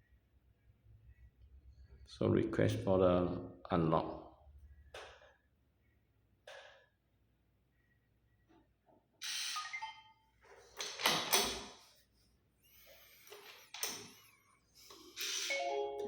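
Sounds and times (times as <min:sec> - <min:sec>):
short electronic beeps: 0:09.2 - 0:10.2
lock rattling: 0:10.8 - 0:11.8.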